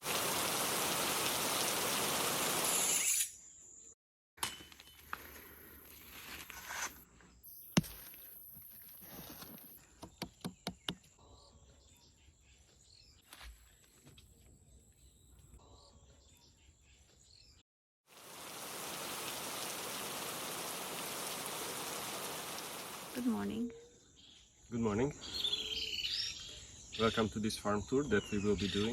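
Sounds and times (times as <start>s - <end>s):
heavy rain pouring: 0.0s - 2.7s, 18.1s - 23.5s.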